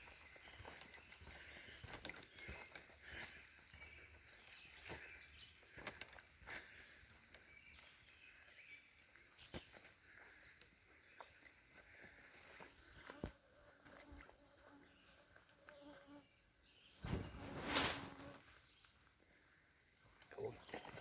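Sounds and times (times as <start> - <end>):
small clicks and ticks: 0.7 - 3.0, 5.7 - 7.5.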